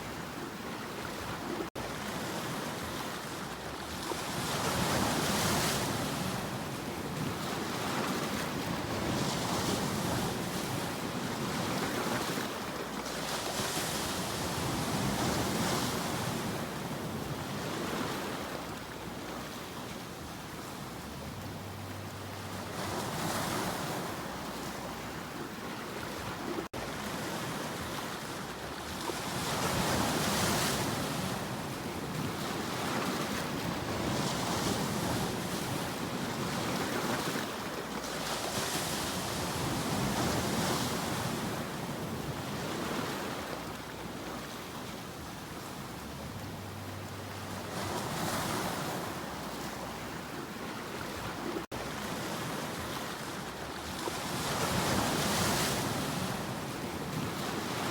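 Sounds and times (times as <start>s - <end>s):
sea waves breaking on shore: 0.0s - 57.9s.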